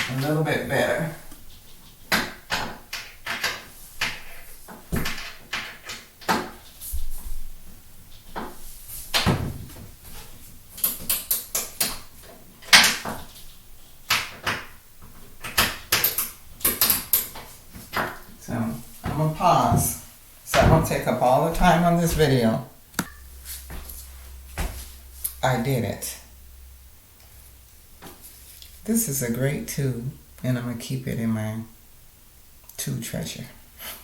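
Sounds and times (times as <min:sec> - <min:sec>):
shower door knocking: 0:20.6 - 0:22.3.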